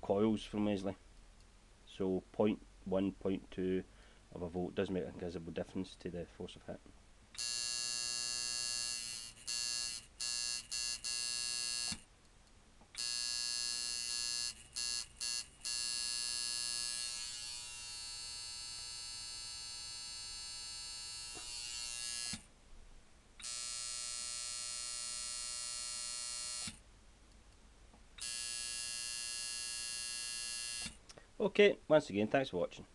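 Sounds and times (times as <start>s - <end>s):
tattoo machine buzzing: 7.4s - 12.0s, 13.0s - 22.5s, 23.4s - 26.8s, 28.2s - 31.0s.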